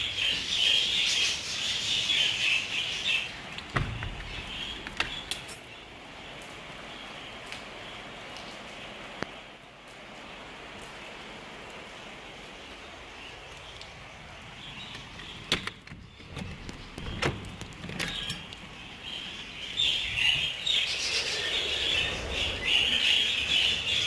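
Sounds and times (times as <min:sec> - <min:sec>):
rain hissing: 0:00.0 - 0:15.5, 0:16.7 - 0:24.0
budgerigars chattering: 0:19.9 - 0:24.0.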